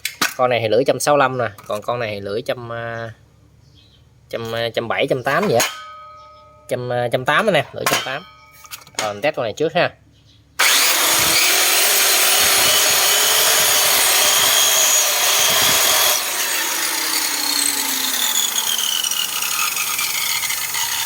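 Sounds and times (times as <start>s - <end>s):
circular saw running: 10.6s - 21.0s.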